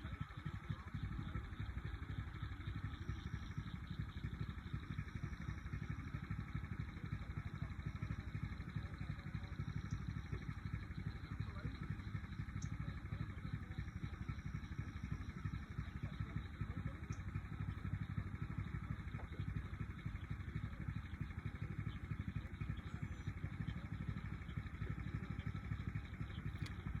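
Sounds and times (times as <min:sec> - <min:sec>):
birds chirping: 0:00.0 - 0:27.0
steady low rumble: 0:00.0 - 0:27.0.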